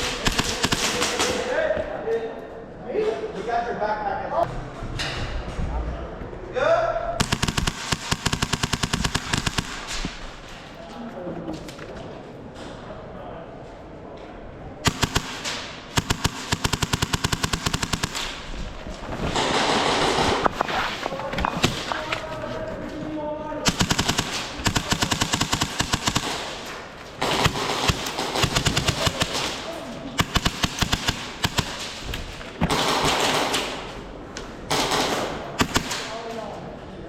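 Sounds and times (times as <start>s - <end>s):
airsoft guns firing bursts: 0.0s - 1.6s, 7.2s - 10.8s, 14.8s - 20.5s, 21.6s - 22.2s, 23.7s - 33.9s, 34.7s - 36.1s
movement and rustle: 18.3s - 23.7s.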